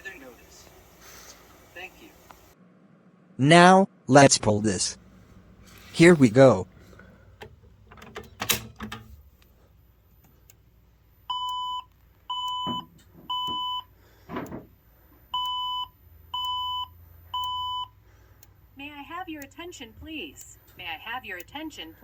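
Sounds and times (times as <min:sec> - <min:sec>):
fire alarm pull station clack: 0:06.8 - 0:09.2
evacuation alarm beeps: 0:11.3 - 0:14.0, 0:15.3 - 0:18.0.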